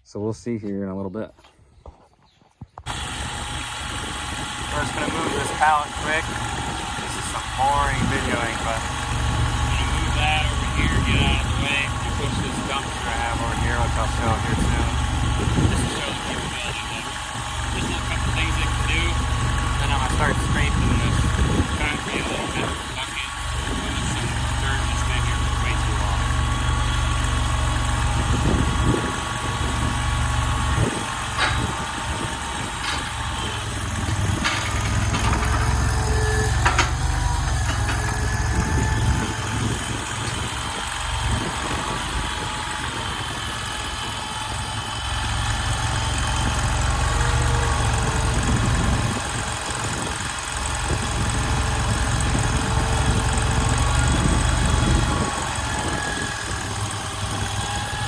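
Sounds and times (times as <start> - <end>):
loader engine running: 2.8 - 58.0
steady whine: 2.9 - 58.0
metal clanks: 31.2 - 40.5.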